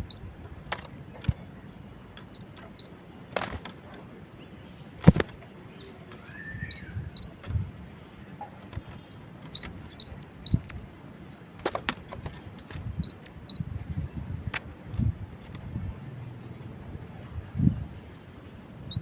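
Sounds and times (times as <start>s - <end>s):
bird whistled song: 0.0s - 0.2s, 2.3s - 2.9s, 5.8s - 7.4s, 9.1s - 10.8s, 12.6s - 13.8s.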